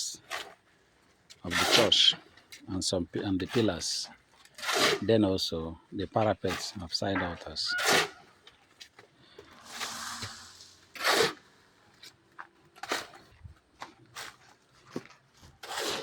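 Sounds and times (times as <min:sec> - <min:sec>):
hand tools scraping: 0:01.3 - 0:02.2, 0:03.4 - 0:05.2, 0:06.2 - 0:08.4, 0:09.3 - 0:16.0.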